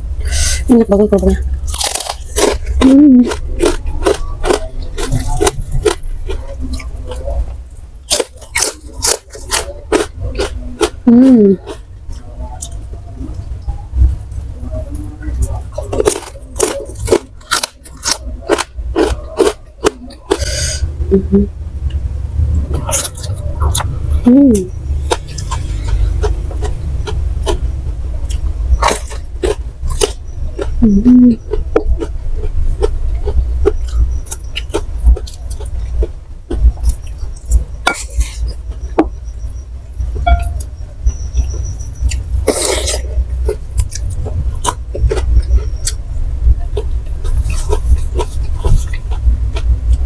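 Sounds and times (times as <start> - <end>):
crackers being chewed: 1.4 - 12.8, 14.9 - 20.8, 25.1 - 27.6, 28.2 - 39.2, 42.0 - 46.0, 46.7 - 50.0.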